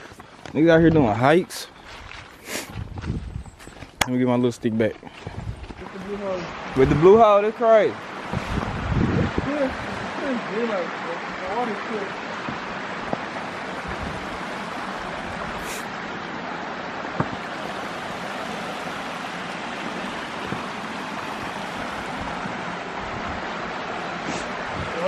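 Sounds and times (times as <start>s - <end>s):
waterfall rushing into pool: 5.8s - 25.0s.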